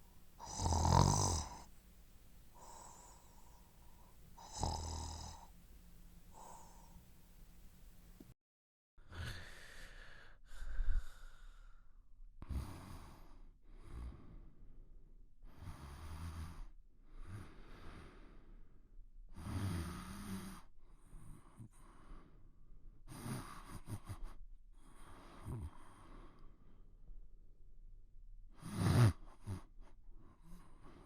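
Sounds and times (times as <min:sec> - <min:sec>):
person snoring: 0:00.0 - 0:01.8, 0:02.5 - 0:05.6, 0:06.2 - 0:07.6.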